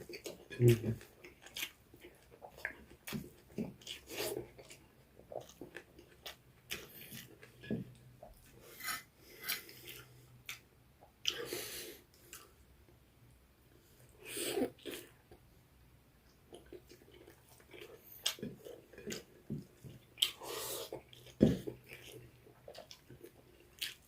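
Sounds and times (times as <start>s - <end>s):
chewing: 0.0s - 10.6s, 16.3s - 24.0s
cutlery scraping on a plate: 8.7s - 9.7s.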